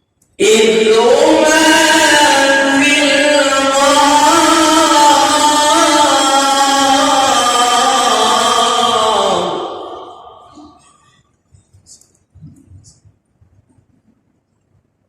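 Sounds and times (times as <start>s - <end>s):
man reciting melodically: 0.4s - 10.8s.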